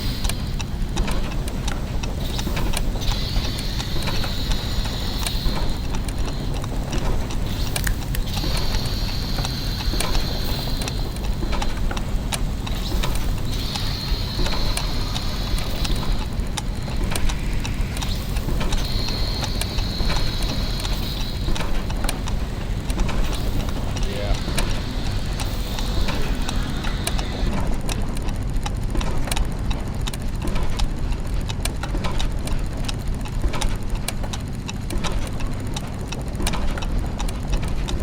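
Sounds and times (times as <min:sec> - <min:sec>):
high whirring tone: 0:00.0 - 0:27.8
clockwork ticks and ratcheting clicks: 0:00.0 - 0:38.0
low mechanical hum: 0:00.0 - 0:38.0.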